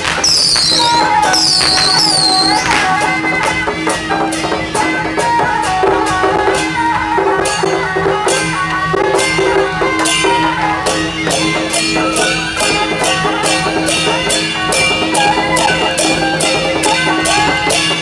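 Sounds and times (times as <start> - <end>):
held tone: 0.0 - 2.9
cymbal-like crashes: 0.0 - 3.0.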